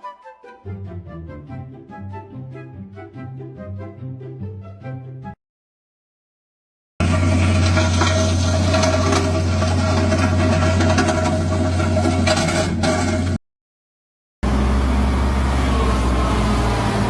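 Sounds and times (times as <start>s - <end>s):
steady engine sound: 7.0s - 12.9s, 14.4s - 17.0s
large engine humming: 7.0s - 13.4s, 14.4s - 17.0s.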